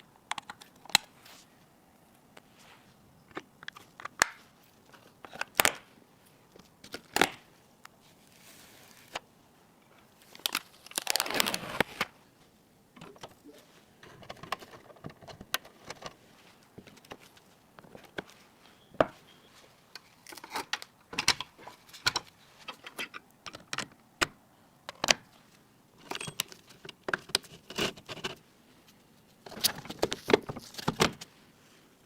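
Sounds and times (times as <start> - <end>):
packaging crinkling: 10.2 - 12.1.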